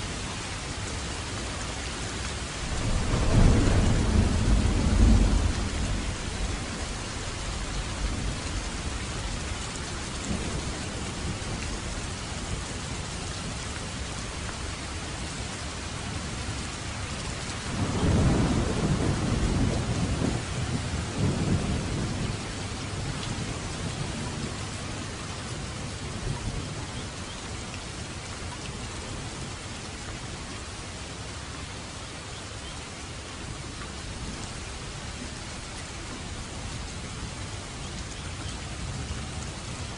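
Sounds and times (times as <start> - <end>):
heavy rain falling: 0.0 - 39.9
thunder rumbling: 2.5 - 9.6, 17.6 - 27.1.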